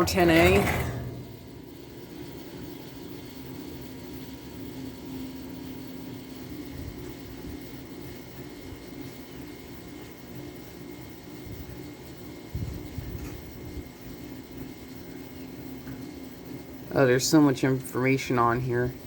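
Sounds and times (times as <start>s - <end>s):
air conditioner humming: 0.0s - 4.7s, 16.2s - 19.0s.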